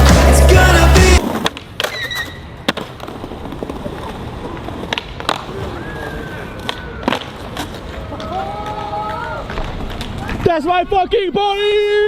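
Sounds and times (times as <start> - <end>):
skateboard wheels rolling on pavement: 0.0 - 12.0
skateboards clacking on ground: 1.2 - 10.9.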